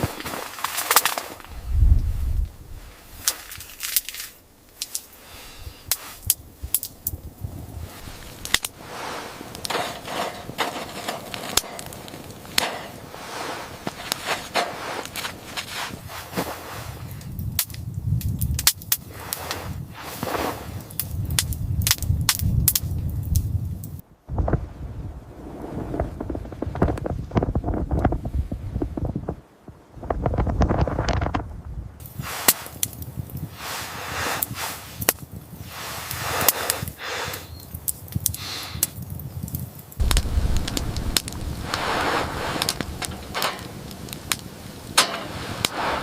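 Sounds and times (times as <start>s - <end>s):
sharp cracks and snaps: 0.0s - 1.6s, 3.2s - 5.2s, 5.8s - 7.3s, 8.2s - 8.8s, 9.4s - 13.1s, 13.8s - 15.7s, 17.1s - 19.6s, 20.2s - 24.0s, 32.0s - 33.5s, 34.3s - 45.8s
low rumble: 1.4s - 3.1s, 40.0s - 44.3s.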